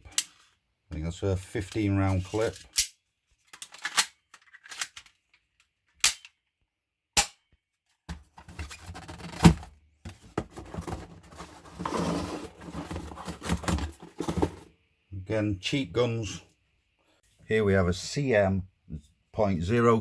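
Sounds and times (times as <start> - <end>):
rustling handling noise: 1.4 - 5.5, 8.1 - 14.7.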